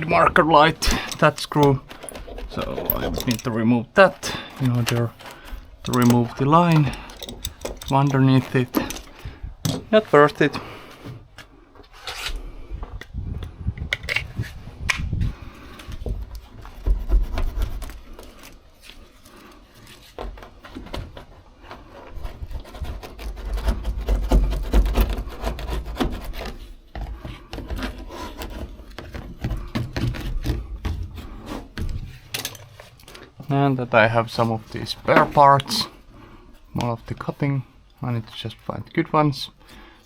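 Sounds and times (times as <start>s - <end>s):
rubbing and scraping: 0.0s - 12.4s, 16.4s - 37.3s
knocks and clicks: 0.7s - 3.5s, 5.8s - 9.9s.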